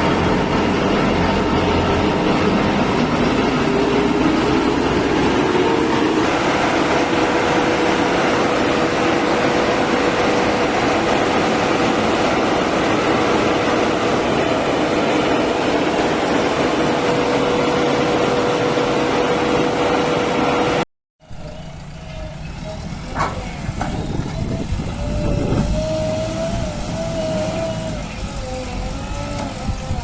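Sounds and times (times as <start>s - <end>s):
steady whine: 0.0s - 20.8s
construction machine engine running: 0.0s - 30.0s.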